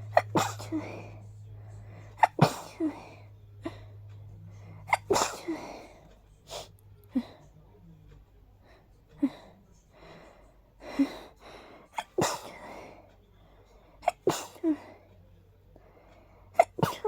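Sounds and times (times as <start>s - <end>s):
person sneezing: 4.9s - 5.8s.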